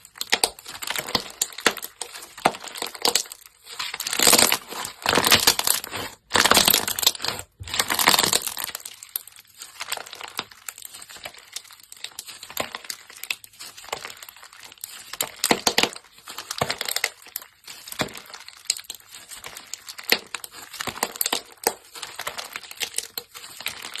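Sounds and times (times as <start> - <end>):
slime squeezed crackling: 0.0 - 24.0.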